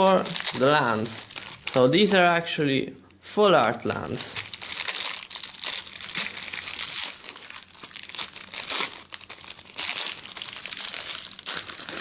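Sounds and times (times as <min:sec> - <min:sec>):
packaging crinkling and tearing: 0:00.0 - 0:02.3, 0:03.6 - 0:12.0.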